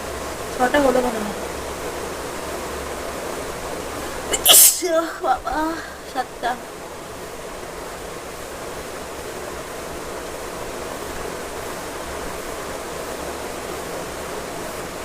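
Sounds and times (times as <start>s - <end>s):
steady background hiss: 0.0s - 15.0s.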